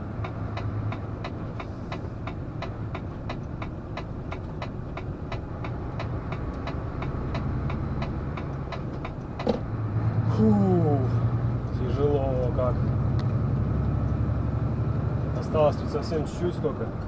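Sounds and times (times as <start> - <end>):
road noise: 0.0 - 17.0
regular ticking: 0.2 - 9.5.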